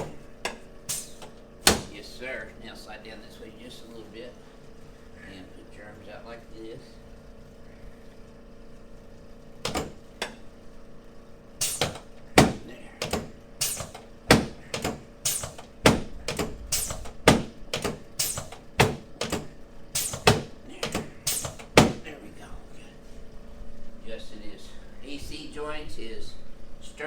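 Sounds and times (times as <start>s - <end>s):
sharp joint clicks: 11.6s - 21.9s.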